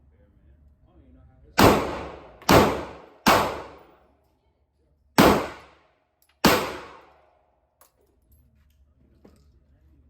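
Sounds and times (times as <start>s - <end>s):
gunshots with ringing echo: 1.6s - 3.9s, 5.2s - 5.8s, 6.4s - 7.2s.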